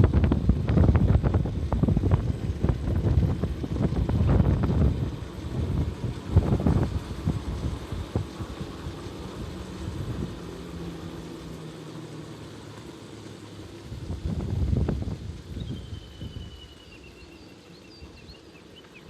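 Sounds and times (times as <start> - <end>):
wind rumbling on microphone: 0.0 - 11.9, 13.4 - 19.0
vehicle engine running: 0.0 - 19.0.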